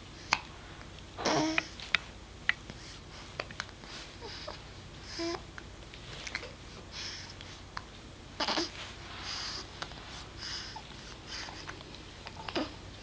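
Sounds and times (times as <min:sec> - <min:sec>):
baby breathing softly: 0:06.6 - 0:07.8, 0:08.6 - 0:11.8.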